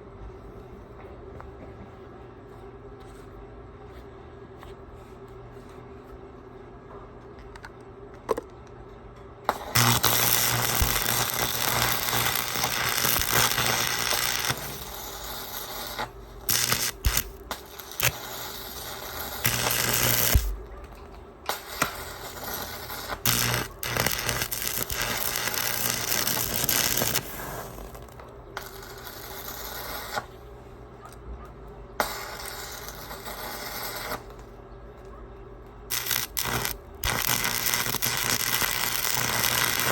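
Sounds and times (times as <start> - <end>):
arc welding crackling: 9.5 - 30.5, 32.0 - 34.5, 35.9 - 39.9.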